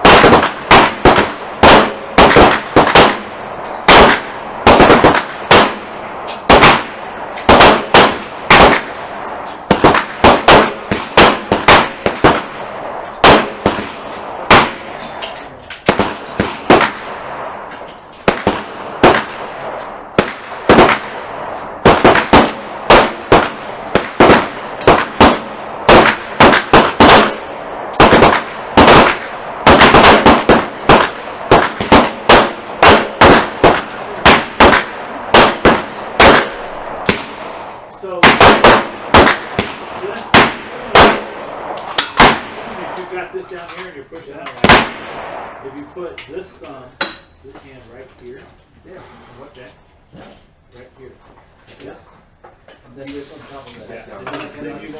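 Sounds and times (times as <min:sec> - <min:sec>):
handguns firing: 0:00.0 - 0:43.1, 0:44.6 - 0:45.4.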